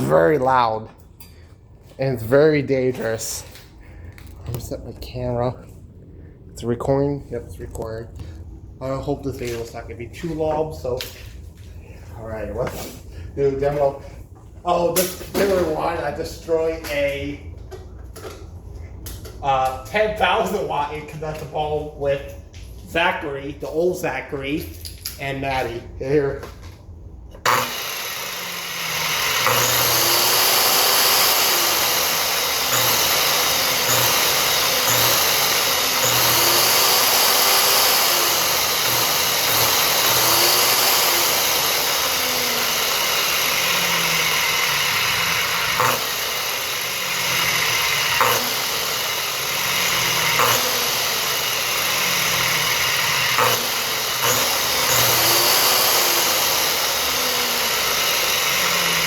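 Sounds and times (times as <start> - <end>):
electric saw running: 0.0 - 0.7, 27.3 - 59.0.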